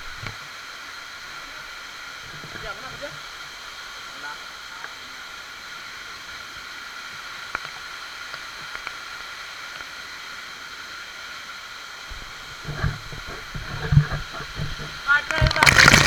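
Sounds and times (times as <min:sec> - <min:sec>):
waterfall rushing: 0:12.1 - 0:16.0.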